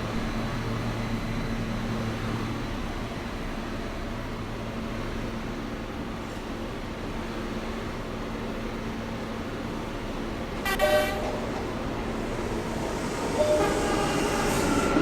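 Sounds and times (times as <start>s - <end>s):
subway train horn blast: 10.6s - 11.9s, 13.3s - 15.0s
train wheel squeal: 10.7s - 15.0s.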